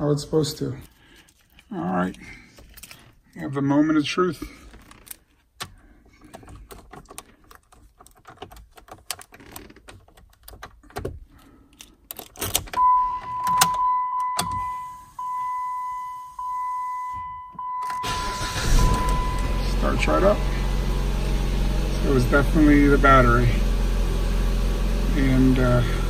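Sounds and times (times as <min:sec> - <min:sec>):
car keys jangling: 0:02.6 - 0:03.2, 0:04.7 - 0:14.7, 0:17.1 - 0:19.6
high electronic warning chime: 0:12.8 - 0:20.5.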